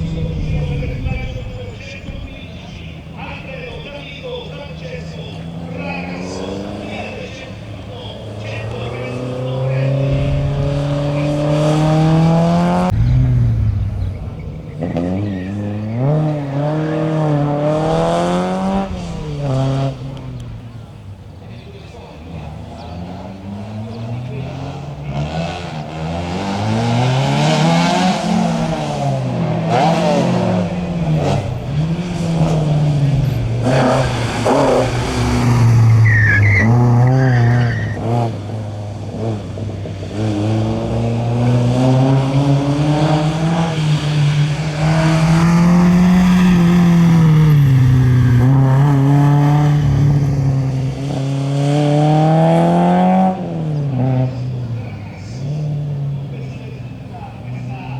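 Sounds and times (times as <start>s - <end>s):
rally car engine revving: 0.0s - 57.9s
tyre squeal: 29.0s - 38.4s.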